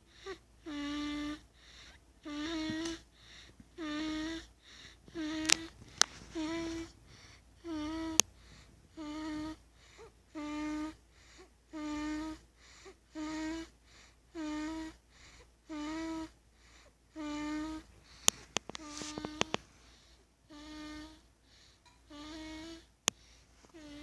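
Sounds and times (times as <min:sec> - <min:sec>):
high-pitched snoring: 0:00.0 - 0:07.0, 0:07.6 - 0:08.2, 0:08.9 - 0:11.0, 0:11.7 - 0:15.0, 0:15.7 - 0:16.4, 0:17.1 - 0:18.2, 0:20.5 - 0:21.3, 0:22.1 - 0:22.9, 0:23.8 - 0:24.0.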